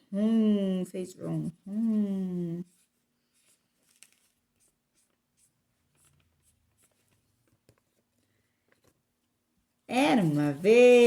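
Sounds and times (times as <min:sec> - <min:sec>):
faint scratches and rustles: 0:01.4 - 0:09.3.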